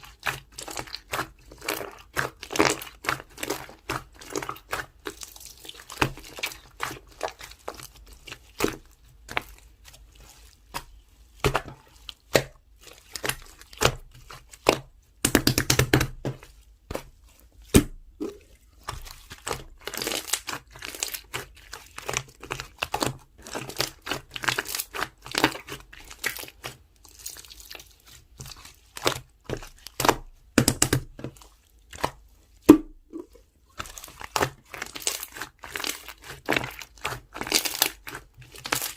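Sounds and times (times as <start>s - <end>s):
slime clicking and popping: 15.2s - 16.1s, 30.0s - 31.1s.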